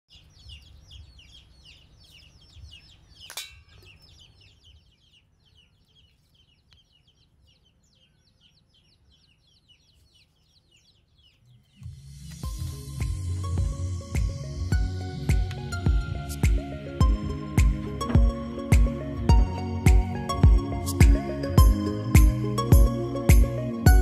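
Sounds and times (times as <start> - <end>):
bird chirping: 0.1 - 24.0
background music: 11.8 - 24.0.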